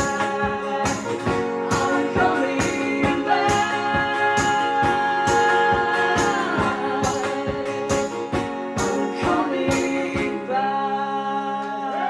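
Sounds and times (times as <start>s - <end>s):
live band music: 0.0s - 10.4s
steady percussion beat: 0.0s - 10.5s
held sung notes: 0.0s - 11.2s.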